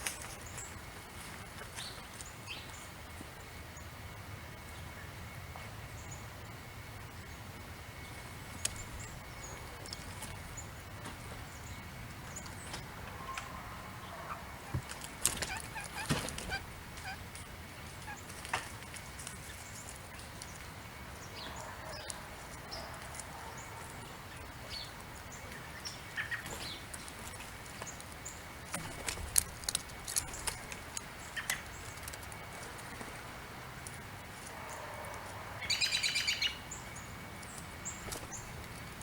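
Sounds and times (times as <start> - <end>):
songbirds chirping: 0.0 - 39.0.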